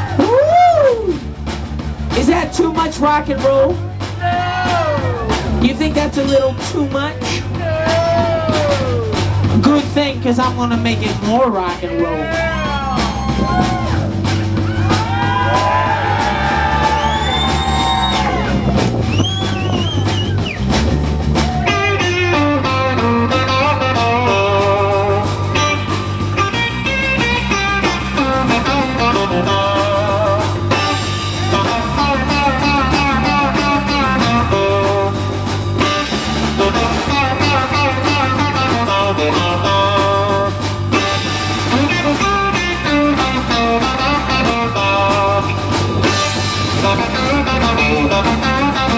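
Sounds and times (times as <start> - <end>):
bass guitar: 0.0 - 48.9
drums: 0.0 - 48.9
lead guitar: 8.2 - 48.9.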